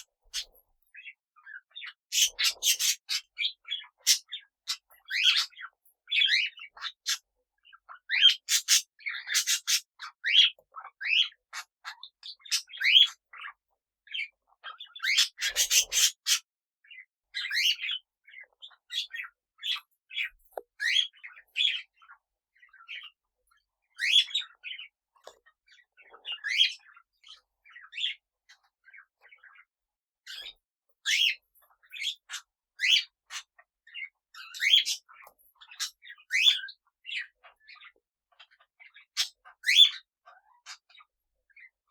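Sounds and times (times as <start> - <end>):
parrot squawk: 0.0 - 0.5, 2.1 - 3.4, 8.2 - 10.5, 15.0 - 16.4
parrots chirping: 0.0 - 13.4, 14.6 - 16.4, 17.4 - 23.2, 23.9 - 24.9, 25.7 - 29.6, 30.3 - 41.0.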